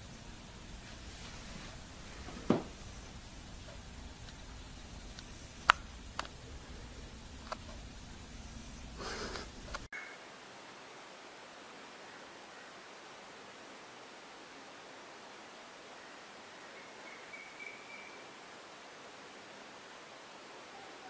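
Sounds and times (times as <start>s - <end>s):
room hiss: 0.0s - 21.0s
short rustle: 0.7s - 3.8s
dull thump: 2.2s - 2.9s.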